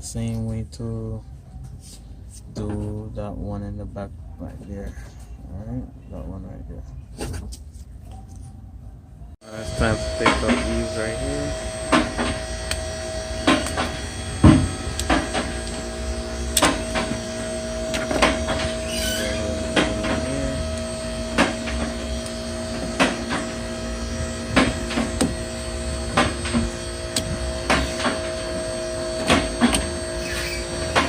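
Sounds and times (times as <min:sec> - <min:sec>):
steady background hum: 0:00.0 - 0:31.0
brief squeak: 0:18.8 - 0:19.5.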